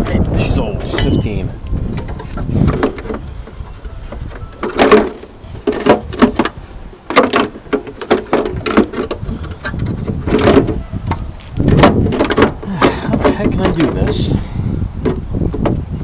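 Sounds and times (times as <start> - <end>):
hard plastic knocking and scraping: 1.7 - 14.4, 15.0 - 15.9.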